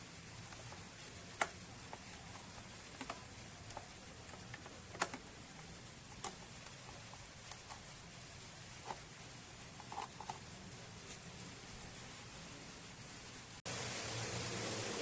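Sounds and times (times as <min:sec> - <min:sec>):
light clicks and taps: 0:00.5 - 0:07.9.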